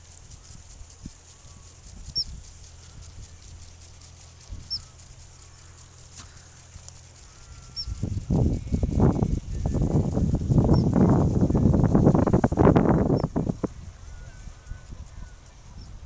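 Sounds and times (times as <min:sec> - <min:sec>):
low rumbling on microphone: 0:00.0 - 0:16.0
prairie dog alarm chirps: 0:02.1 - 0:03.1, 0:04.0 - 0:05.6, 0:06.3 - 0:08.1, 0:10.7 - 0:11.0, 0:13.2 - 0:13.4.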